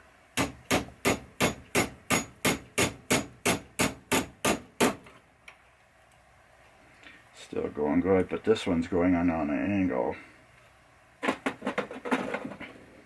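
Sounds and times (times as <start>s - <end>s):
hammer tapping a pin punch: 0.4s - 5.1s.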